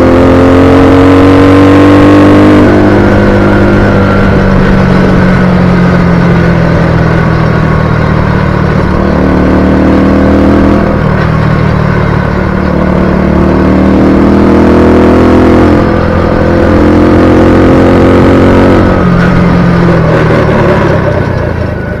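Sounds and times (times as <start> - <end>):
small engine revving: 12.4 - 22.0.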